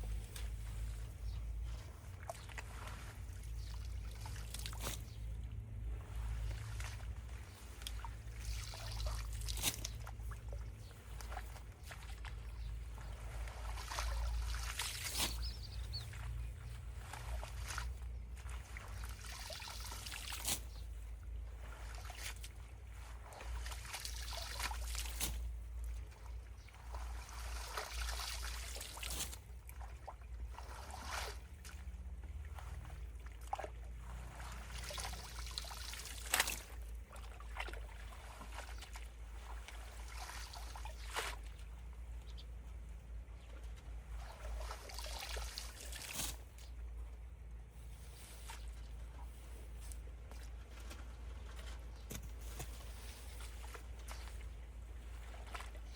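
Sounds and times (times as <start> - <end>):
steady low rumble: 0.0 - 44.9, 45.7 - 55.9
water trickling and sloshing: 0.0 - 55.9
debris knocks and splashes: 34.4 - 41.6.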